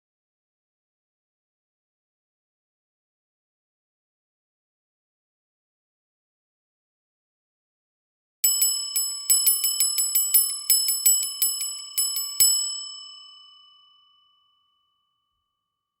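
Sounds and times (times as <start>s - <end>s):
small bell rung rapidly: 8.4s - 14.6s.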